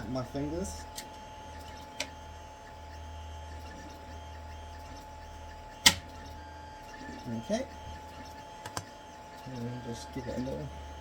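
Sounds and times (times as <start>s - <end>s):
metal sheet snapping onto magnet: 5.8s - 6.1s.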